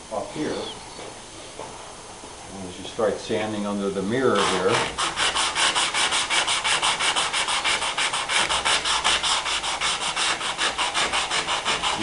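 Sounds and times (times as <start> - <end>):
sandpaper scraping car panel: 4.3 - 12.0.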